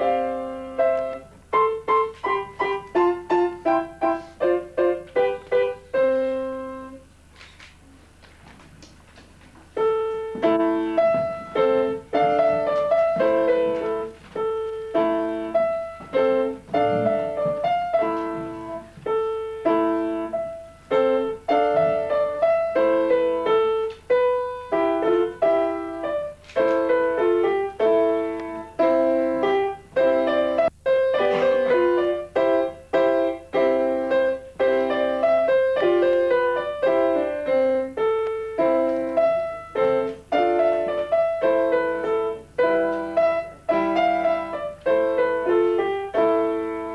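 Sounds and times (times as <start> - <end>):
simple piano piece: 0.0 - 46.9.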